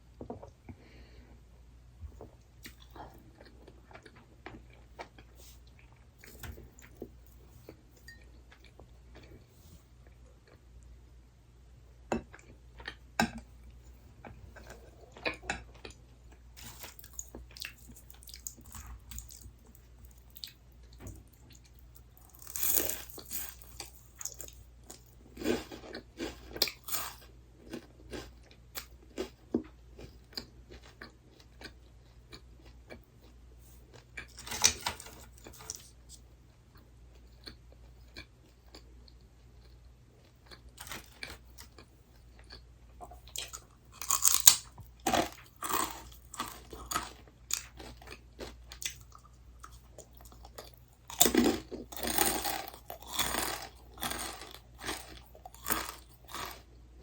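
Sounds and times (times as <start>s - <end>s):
person chewing crunchy snacks: 14.5s - 20.6s, 21.4s - 33.1s, 37.2s - 56.8s.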